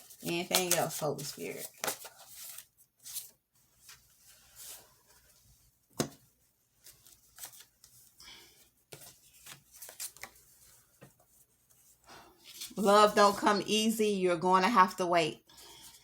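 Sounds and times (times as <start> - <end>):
cards being shuffled: 0.0 - 3.3, 6.8 - 8.1, 8.9 - 11.1.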